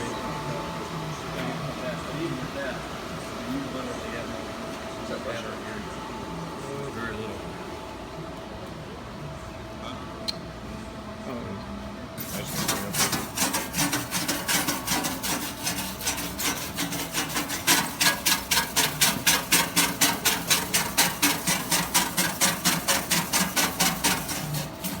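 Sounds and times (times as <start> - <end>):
welding rig rhythmic rasping: 12.2 - 25.0.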